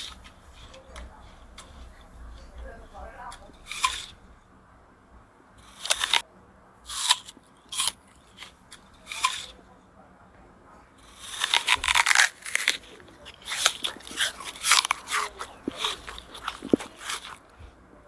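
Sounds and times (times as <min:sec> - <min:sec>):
crisp crunching bites: 0:03.5 - 0:04.2, 0:05.6 - 0:06.2, 0:06.9 - 0:09.6, 0:11.0 - 0:17.5.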